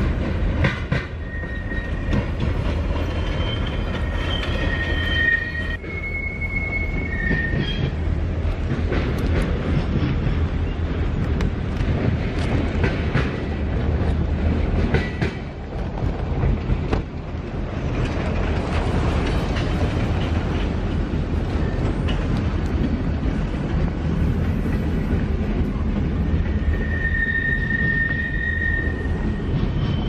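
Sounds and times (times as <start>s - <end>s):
wheels clicking over rail joints: 0.0s - 5.0s, 6.9s - 28.2s
railroad cars rumbling: 0.0s - 30.0s
high wheel squeal: 1.1s - 2.3s, 3.0s - 8.0s, 26.5s - 30.0s.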